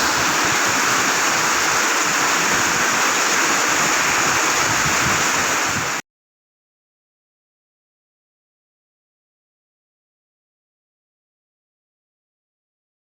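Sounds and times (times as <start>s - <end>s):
heavy rain pouring: 0.0s - 6.0s.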